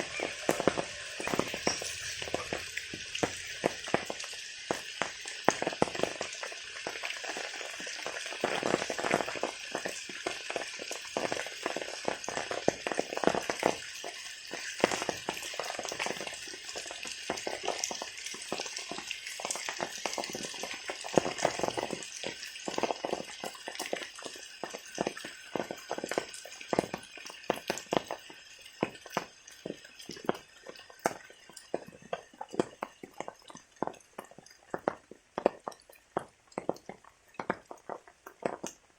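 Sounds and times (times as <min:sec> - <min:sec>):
rain pattering on surfaces: 0:00.0 - 0:38.9.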